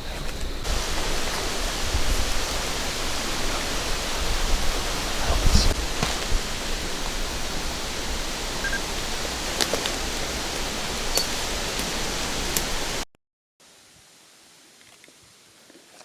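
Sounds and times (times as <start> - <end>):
steady rushing noise: 0.5 - 13.0.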